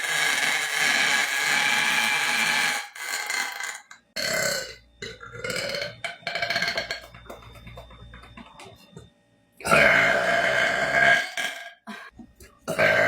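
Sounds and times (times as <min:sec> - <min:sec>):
person burping: 0:04.2 - 0:07.2, 0:09.6 - 0:12.1, 0:12.7 - 0:13.0.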